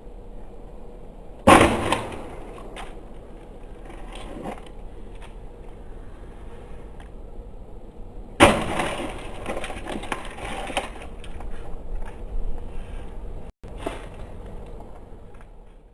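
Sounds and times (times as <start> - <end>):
loud crash: 1.4 - 2.9, 8.4 - 10.1.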